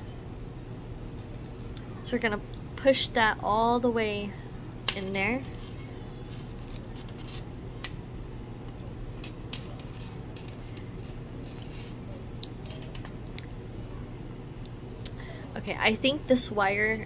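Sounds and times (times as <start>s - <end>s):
steady low hum: 0.0s - 17.0s
cable clicks and scuffs: 4.8s - 13.7s.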